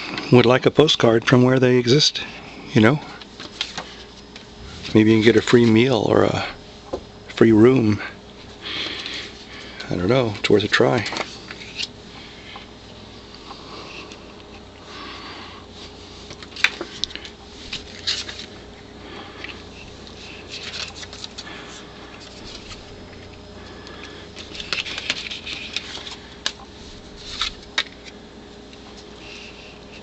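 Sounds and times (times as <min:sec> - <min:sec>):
faint steady hum: 0:00.0 - 0:30.0
stiff card rustling and sliding: 0:19.5 - 0:28.2.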